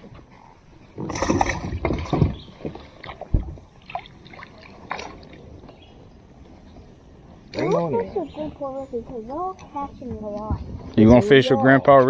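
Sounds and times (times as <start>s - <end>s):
knocks and rattles on a boat: 1.0s - 4.1s, 8.4s - 11.3s.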